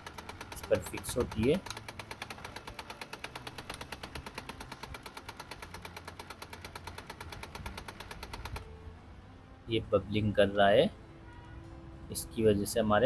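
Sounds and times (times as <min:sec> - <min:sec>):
laser printer mechanism knocking: 0:00.0 - 0:08.6.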